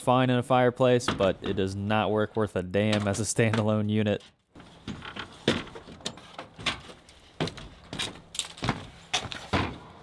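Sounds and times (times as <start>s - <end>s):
knocks and clicks of handling: 2.9s - 9.9s.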